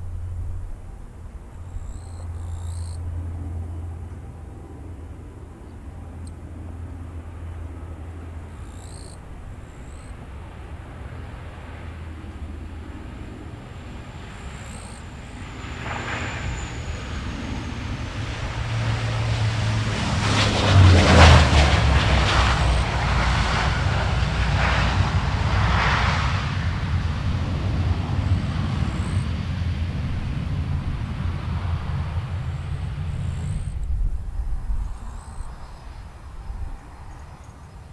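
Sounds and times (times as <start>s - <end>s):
airliner engines passing: 0.0s - 37.9s
thin high whine: 12.7s - 18.5s, 32.0s - 36.6s.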